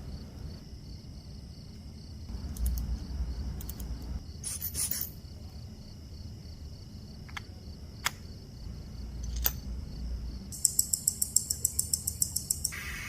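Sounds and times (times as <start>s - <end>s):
sharp clicks: 3.6s - 4.1s.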